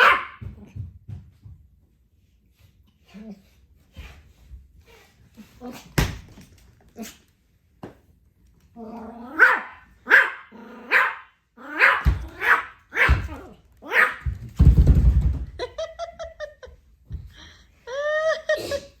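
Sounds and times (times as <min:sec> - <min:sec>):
puppy barking: 0:00.0 - 0:00.5, 0:09.3 - 0:14.3
puppy growling: 0:08.8 - 0:09.8.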